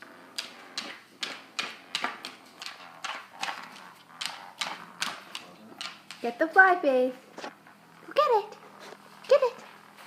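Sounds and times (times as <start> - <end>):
dog claws tapping on floor: 0.2 - 6.8.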